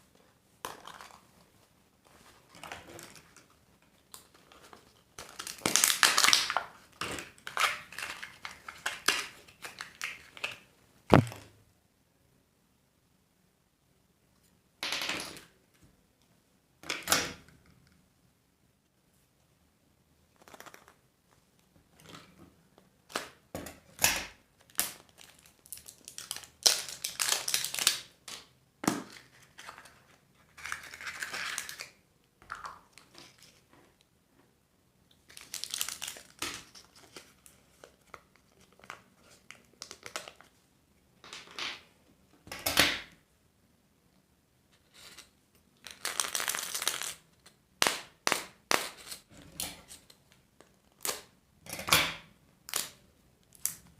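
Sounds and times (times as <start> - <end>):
wrappers crinkling and tearing: 24.6 - 28.1, 35.3 - 40.4, 45.8 - 47.2.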